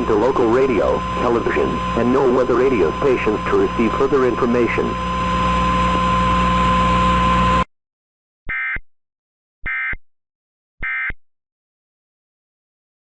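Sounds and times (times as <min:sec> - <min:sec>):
steady hiss and hum: 0:00.0 - 0:07.6.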